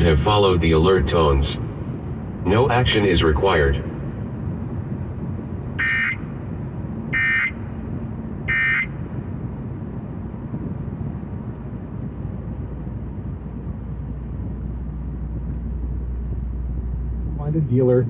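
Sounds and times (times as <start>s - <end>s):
car road noise: 0.0s - 18.0s
data tone bursts: 5.8s - 6.2s.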